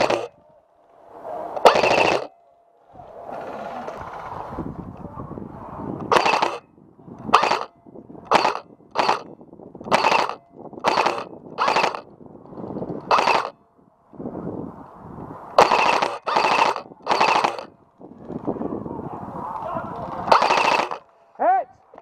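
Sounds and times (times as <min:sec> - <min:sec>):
airsoft guns firing bursts: 0:00.0 - 0:00.3, 0:01.6 - 0:02.3, 0:06.1 - 0:06.6, 0:07.3 - 0:07.7, 0:08.3 - 0:09.3, 0:09.9 - 0:12.0, 0:13.1 - 0:13.5, 0:15.6 - 0:17.7, 0:20.2 - 0:21.1.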